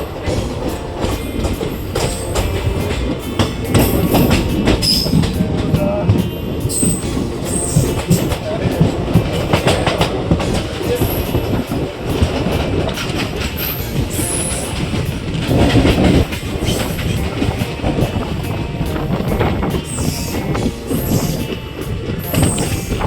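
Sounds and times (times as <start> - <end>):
train coaches rumbling: 0.0 - 23.0
wheels clacking over rail joints: 0.0 - 23.0
high-pitched wheel squeals: 0.2 - 8.6.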